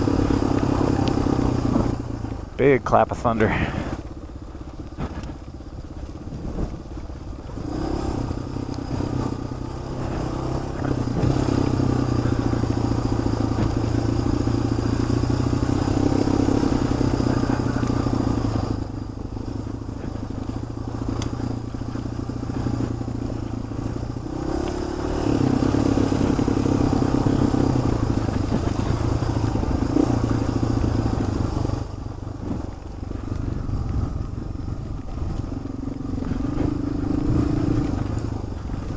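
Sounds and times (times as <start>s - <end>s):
motorcycle engine running: 0.0s - 38.9s
wind and road noise: 0.0s - 38.9s.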